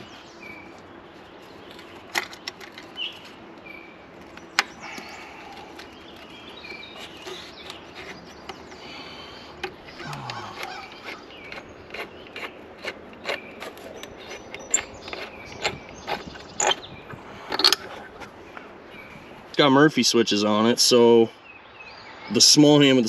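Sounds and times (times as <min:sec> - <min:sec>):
sharp clicks and knocks: 0:01.6 - 0:08.8.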